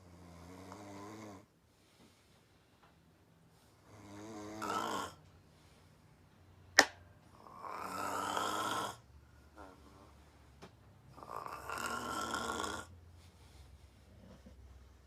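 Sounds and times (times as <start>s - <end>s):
woman snoring: 0.0s - 1.5s, 3.8s - 5.2s, 7.4s - 9.1s, 11.1s - 13.0s.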